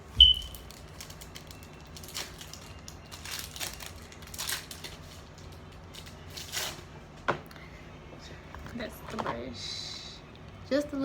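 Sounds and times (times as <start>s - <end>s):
packaging rustling and crinkling: 0.3s - 6.9s.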